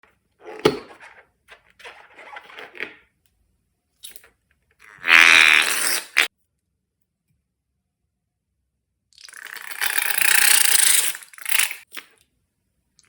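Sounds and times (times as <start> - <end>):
balloon buzzy squeal: 4.8 - 6.3.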